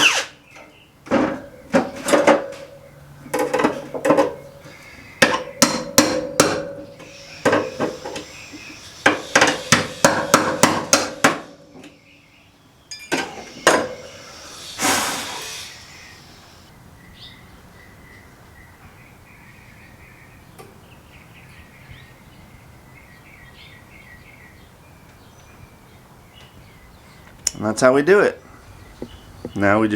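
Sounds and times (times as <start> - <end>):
hammer striking steel panel: 5.2 - 8.0, 9.1 - 11.6
faint bird chirps: 6.9 - 9.0, 11.9 - 20.3
short scraping rush: 13.3 - 16.7.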